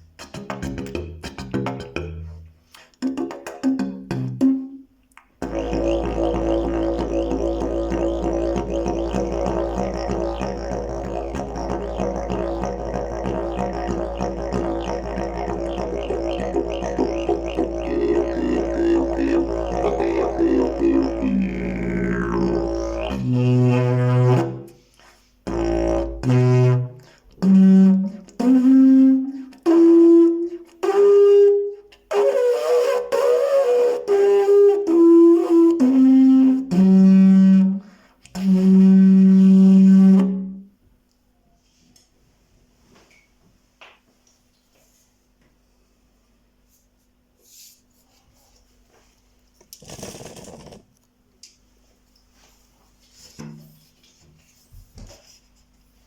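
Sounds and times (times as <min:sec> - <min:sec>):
didgeridoo droning: 0:05.4 - 0:24.8, 0:25.4 - 0:31.2, 0:32.1 - 0:37.8.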